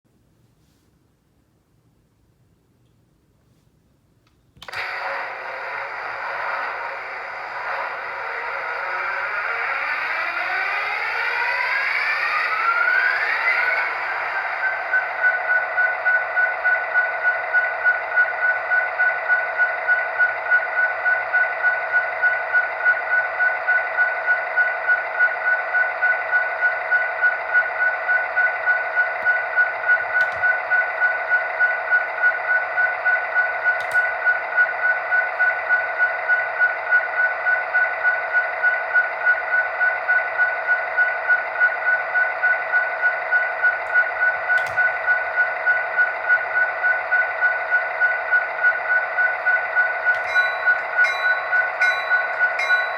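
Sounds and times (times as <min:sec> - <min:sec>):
locomotive bell ringing: 0:49.8 - 0:52.9.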